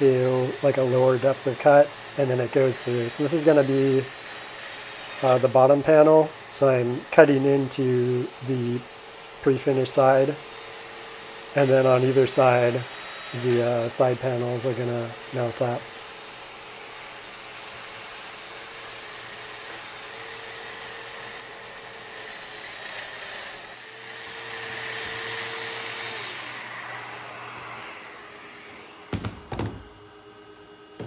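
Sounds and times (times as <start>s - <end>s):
power joiner cutting wood: 0.0s - 31.0s
sharp knocks: 29.1s - 30.1s.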